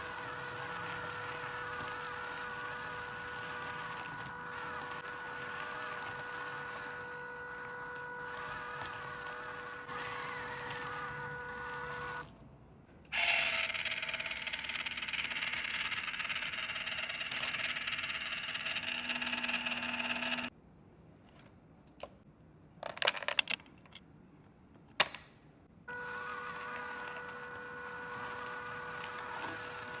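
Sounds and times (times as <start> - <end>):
toy car motor whirring: 0.0 - 12.3, 13.1 - 20.5, 25.9 - 30.0.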